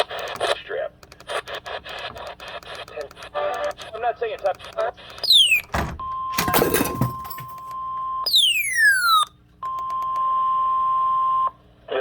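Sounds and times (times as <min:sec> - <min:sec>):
alert tone: 0:05.2 - 0:07.7, 0:08.3 - 0:09.3.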